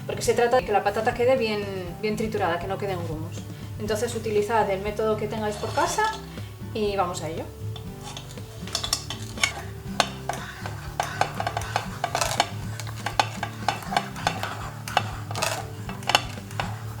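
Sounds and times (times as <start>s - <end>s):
background music: 0.0s - 17.0s
food mill metallic clicks and scraping: 5.4s - 6.4s, 7.7s - 17.0s.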